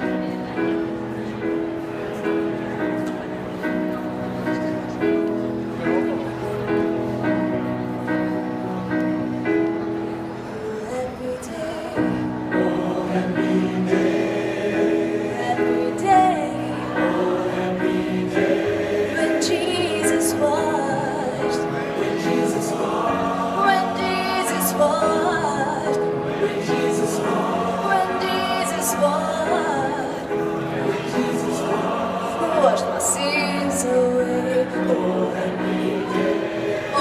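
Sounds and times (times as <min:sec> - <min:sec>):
group singing in chorus: 0:12.0 - 0:37.0.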